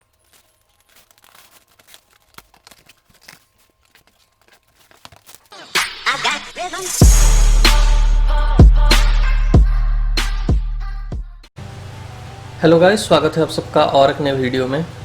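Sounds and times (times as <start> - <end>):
faint crinkling and ticking: 0.0 - 5.6.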